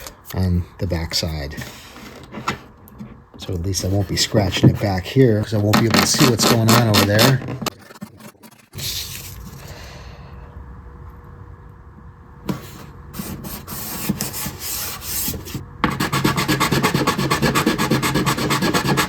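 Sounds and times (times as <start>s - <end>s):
sandpaper rubbing on plastic: 5.8s - 9.4s, 13.2s - 19.0s.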